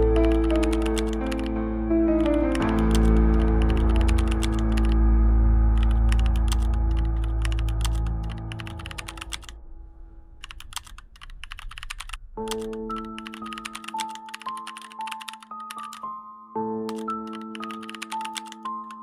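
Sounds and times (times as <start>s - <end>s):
keyboard typing clicks: 0.0s - 1.5s, 2.2s - 5.0s, 5.7s - 9.6s, 10.4s - 16.1s, 16.9s - 19.0s
low music drone: 0.0s - 10.5s.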